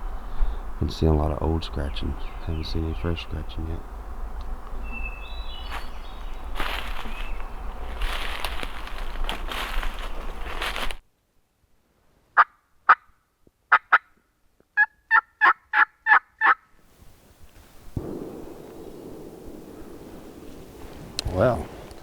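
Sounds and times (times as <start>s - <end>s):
footsteps through dry leaves: 5.2s - 11.0s
turkey yelping: 14.8s - 16.6s.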